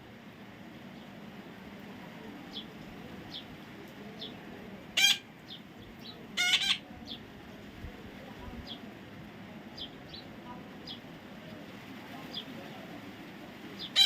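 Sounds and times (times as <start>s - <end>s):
parrot calling: 5.0s - 5.3s, 6.4s - 6.8s, 13.8s - 14.0s.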